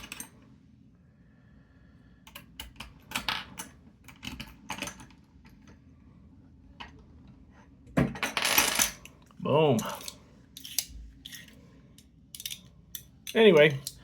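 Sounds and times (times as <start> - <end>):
small metal parts clicking: 9.8 - 14.0.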